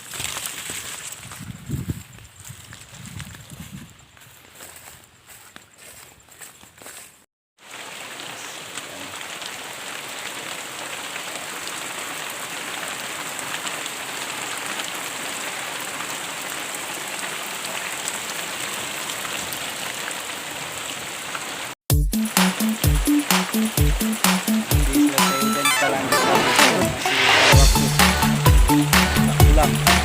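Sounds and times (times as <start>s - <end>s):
rain falling: 7.6s - 30.0s.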